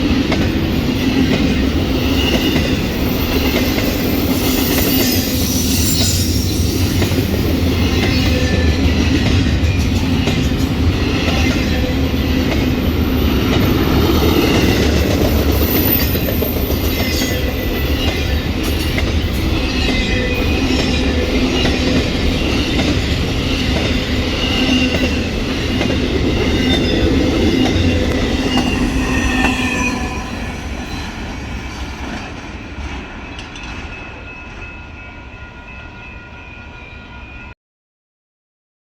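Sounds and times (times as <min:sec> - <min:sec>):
railroad cars rolling on rails: 0:00.0 - 0:37.6
high wheel squeals: 0:01.9 - 0:08.8, 0:26.4 - 0:31.2.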